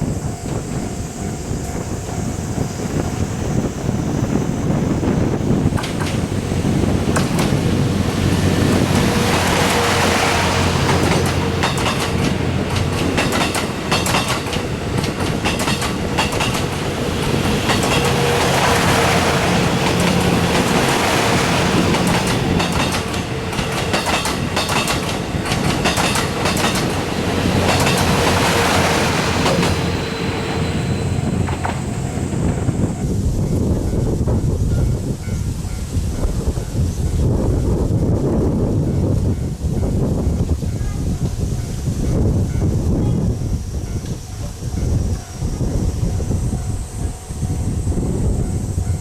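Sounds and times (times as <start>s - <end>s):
train rolling noise rush: 0.0s - 49.0s
train wheels clacking over rail joints: 5.0s - 33.1s.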